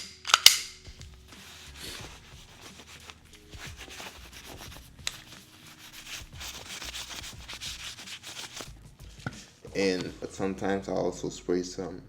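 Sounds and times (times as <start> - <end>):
sharp click: 0.0 - 0.9
rubbing and handling noises: 0.0 - 10.0.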